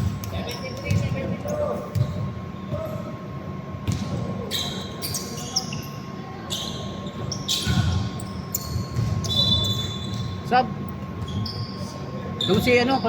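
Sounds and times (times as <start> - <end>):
sneakers squeaking: 0.0 - 3.1, 3.8 - 13.0.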